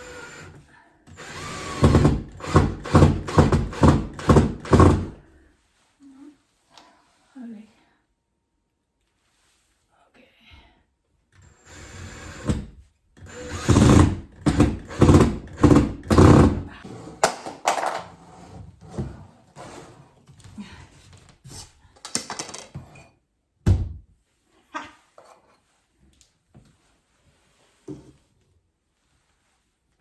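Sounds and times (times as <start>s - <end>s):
cabinet door knocks and thuds: 23.6s - 24.0s.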